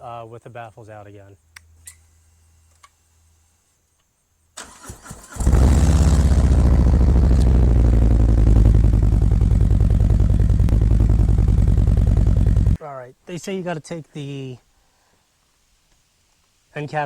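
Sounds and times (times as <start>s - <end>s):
motorcycle starter cranking: 4.6s - 12.8s
motorcycle engine idling loud: 5.5s - 12.8s.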